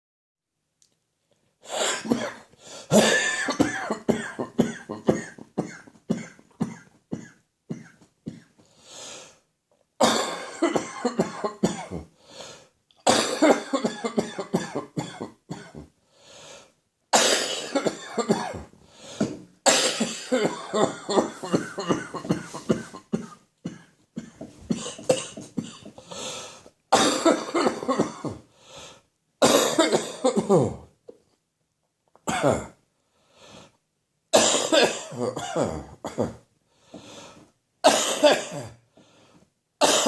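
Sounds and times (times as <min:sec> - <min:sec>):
man coughing harshly: 0:01.7 - 0:08.5, 0:10.0 - 0:12.1, 0:13.0 - 0:15.9, 0:17.2 - 0:26.0, 0:26.9 - 0:28.5, 0:29.4 - 0:30.9, 0:32.3 - 0:32.8, 0:34.4 - 0:36.4, 0:37.8 - 0:38.8.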